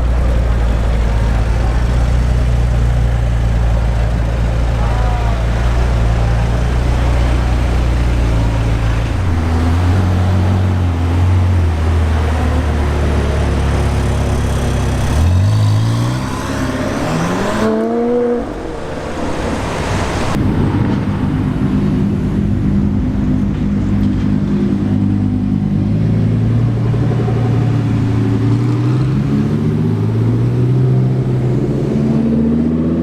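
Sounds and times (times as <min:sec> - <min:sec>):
car engine revving: 0:00.0 - 0:33.0.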